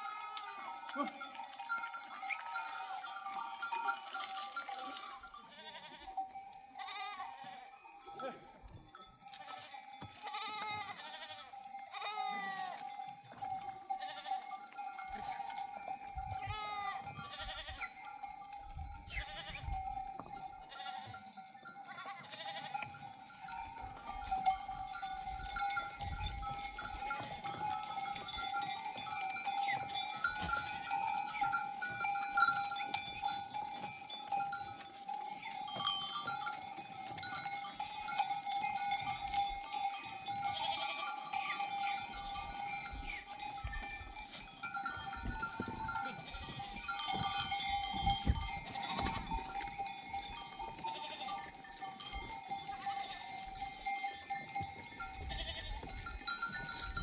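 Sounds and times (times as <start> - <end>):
sheep bells jangling: 0.0 - 57.0
sheep bleating: 4.1 - 6.2, 6.8 - 7.8, 9.4 - 12.8, 14.0 - 14.5, 16.4 - 18.0, 19.1 - 19.6, 20.7 - 21.2, 21.9 - 22.9, 40.5 - 41.0, 50.9 - 51.4, 55.3 - 55.9.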